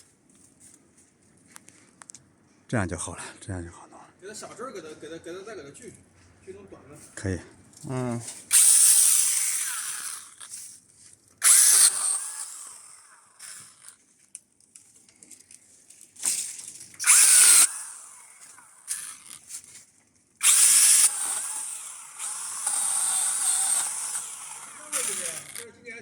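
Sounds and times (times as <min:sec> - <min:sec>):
battery chainsaw cutting wood: 0:08.4 - 0:10.7, 0:11.4 - 0:14.0, 0:16.2 - 0:19.7, 0:20.4 - 0:25.7.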